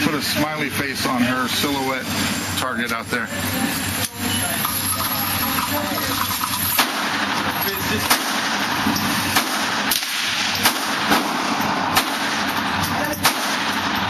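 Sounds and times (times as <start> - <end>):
rifle shots: 6.7 - 14.0.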